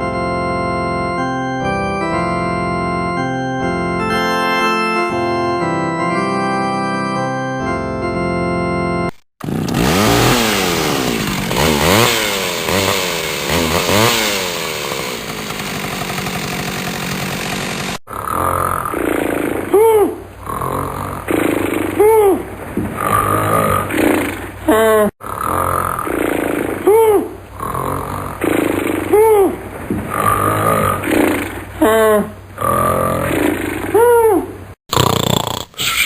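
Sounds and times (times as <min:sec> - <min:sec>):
organ-like keyboard chords: 0:00.0 - 0:09.2.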